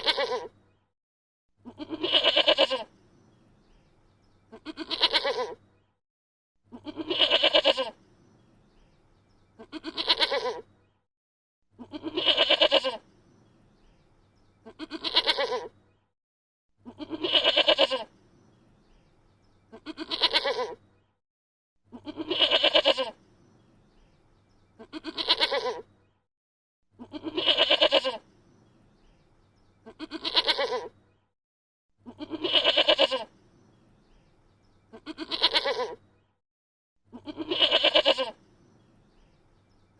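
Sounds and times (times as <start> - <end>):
goat bleating: 0.0 - 0.5, 1.6 - 2.9, 4.5 - 5.6, 6.7 - 8.0, 9.6 - 10.6, 11.8 - 13.0, 14.6 - 15.7, 16.8 - 18.1, 19.7 - 20.8, 21.9 - 23.2, 24.8 - 25.8, 27.0 - 28.2, 29.8 - 30.9, 32.0 - 33.3, 34.9 - 36.0, 37.1 - 38.4.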